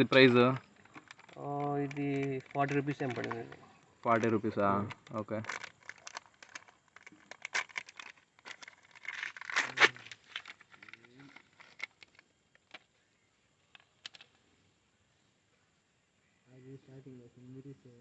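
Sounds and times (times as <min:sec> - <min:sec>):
plastic parts crinkling and clicking: 0:00.0 - 0:13.0, 0:13.6 - 0:14.4.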